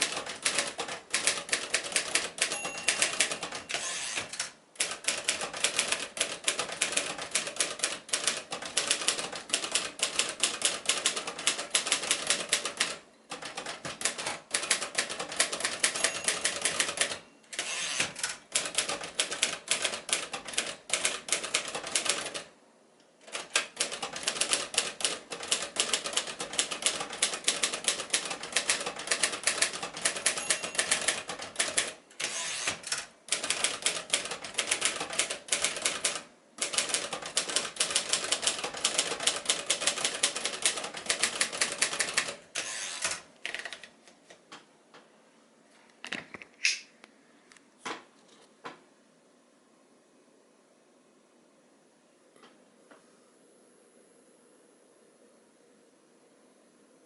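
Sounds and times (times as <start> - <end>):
typewriter keystroke clacks: 0.0 - 22.5, 23.2 - 43.9.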